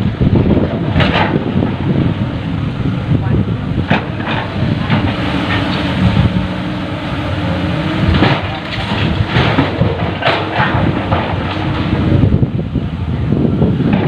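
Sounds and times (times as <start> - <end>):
heavy diesel engines running: 0.0 - 14.0
stone clanking into truck: 3.9 - 5.9, 8.1 - 11.8.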